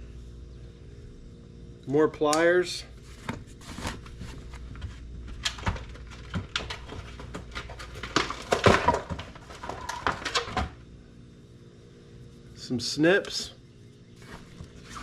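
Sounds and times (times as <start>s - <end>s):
packaging rustling and crinkling: 3.0s - 10.7s.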